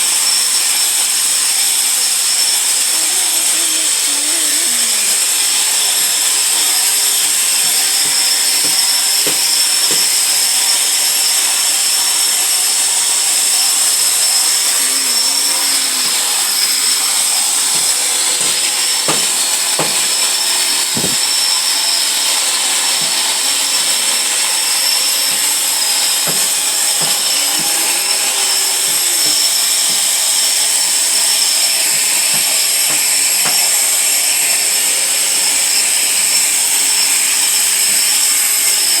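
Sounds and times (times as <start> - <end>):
floor grinding machine whine: 0.0 - 39.0
short knocks: 17.8 - 20.1, 21.0 - 21.2.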